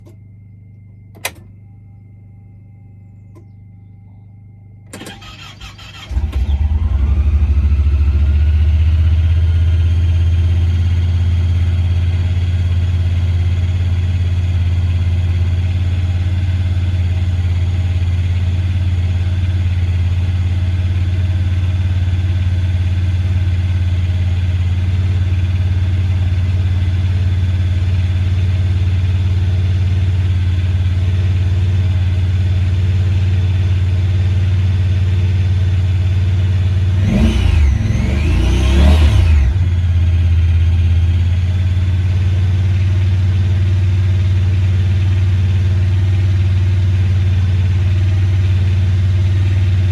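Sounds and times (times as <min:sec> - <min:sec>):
click: 0:00.0 - 0:01.6, 0:03.3 - 0:03.6
faint steady tone: 0:00.0 - 0:05.0
engine starter cranking: 0:04.9 - 0:06.9
engine fast idle: 0:04.9 - 0:49.9.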